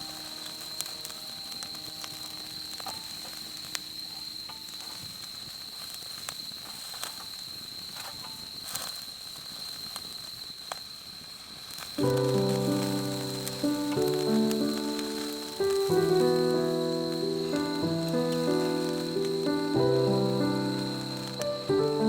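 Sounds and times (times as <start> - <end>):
faint held music notes: 0.0 - 5.2, 12.0 - 22.0
high-pitched insect call: 0.0 - 22.0.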